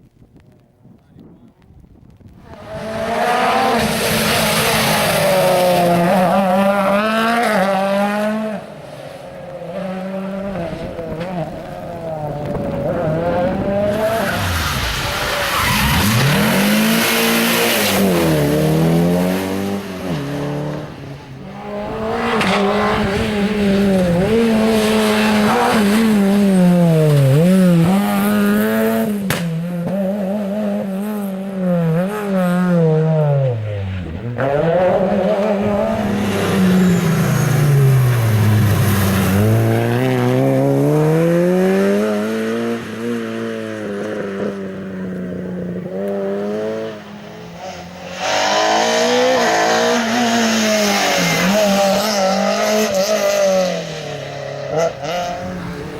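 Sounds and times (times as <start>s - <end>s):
rally car engines revving: 2.4s - 55.9s.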